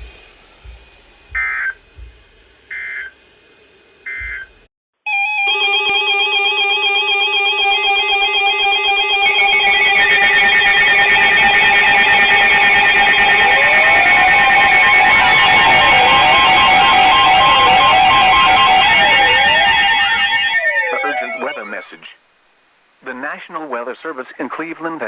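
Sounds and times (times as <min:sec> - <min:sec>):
warbling data bursts: 0:00.9 - 0:02.0, 0:08.0 - 0:22.0
loud guitar music: 0:05.4 - 0:21.6.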